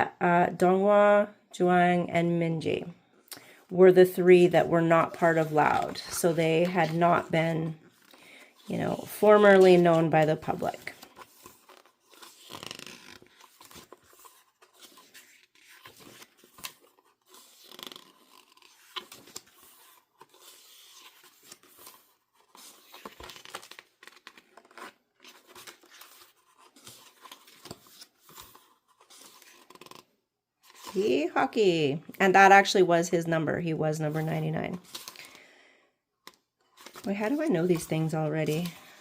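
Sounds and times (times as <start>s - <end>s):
paper and plastic rustling: 5.0s - 31.4s, 34.1s - 35.4s, 36.6s - 39.0s.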